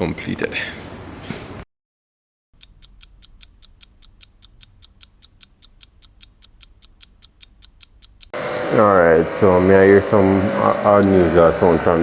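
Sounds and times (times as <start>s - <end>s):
fast sharp ticking clicks: 2.6s - 8.4s.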